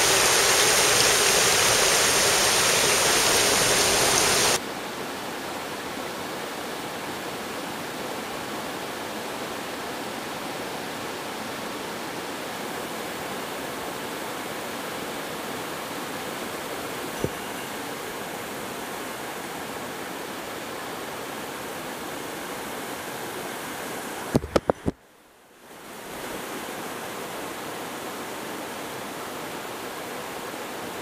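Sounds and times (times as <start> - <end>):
stream water rushing: 0.0 - 24.9, 25.8 - 31.0.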